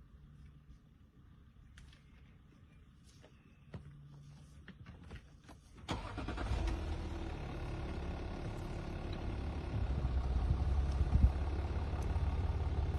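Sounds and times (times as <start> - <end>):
vehicle engine starting and running: 5.9 - 12.9.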